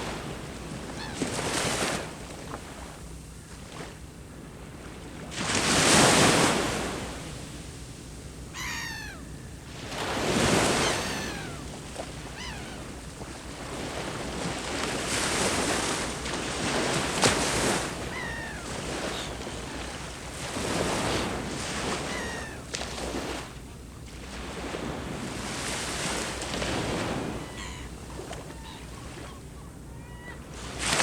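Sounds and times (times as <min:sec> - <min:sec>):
sea waves breaking on shore: 0:00.0 - 0:31.0
bird crying: 0:08.5 - 0:09.6, 0:10.5 - 0:13.0, 0:18.1 - 0:19.9, 0:22.0 - 0:22.7, 0:27.4 - 0:30.5.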